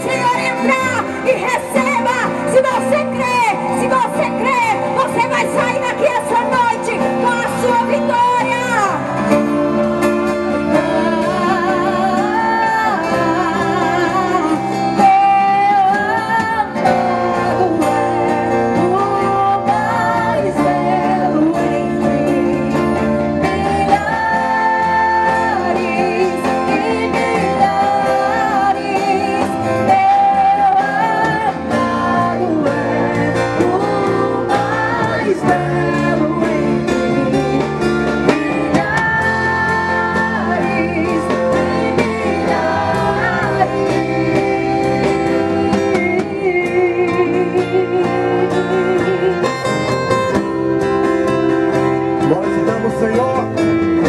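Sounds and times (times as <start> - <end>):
guitar: 0.0 - 54.0
sustained instrumental accompaniment: 0.0 - 54.0
person singing worship song: 23.4 - 49.4.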